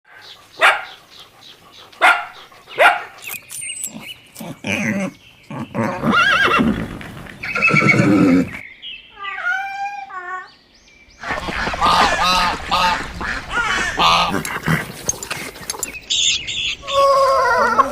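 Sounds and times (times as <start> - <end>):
horse neighing: 4.6 - 8.6.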